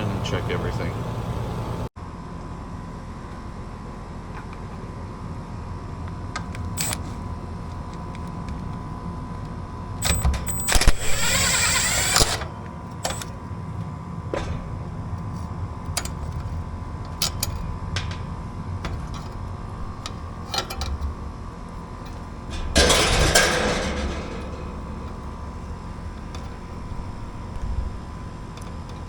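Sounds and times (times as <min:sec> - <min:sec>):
steady hum: 0:09.8 - 0:29.0.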